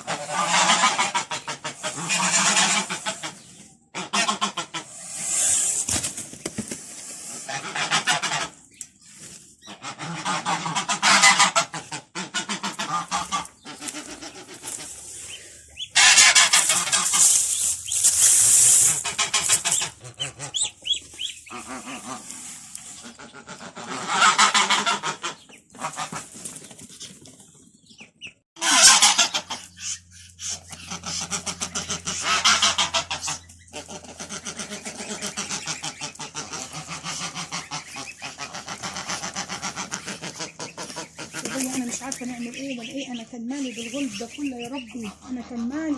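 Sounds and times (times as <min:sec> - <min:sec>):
geese honking: 0:00.0 - 0:05.8, 0:07.2 - 0:08.8, 0:09.6 - 0:26.4, 0:28.6 - 0:45.9
geese and ducks calling: 0:00.0 - 0:27.2, 0:27.8 - 0:45.9
steady low hum: 0:28.9 - 0:45.9.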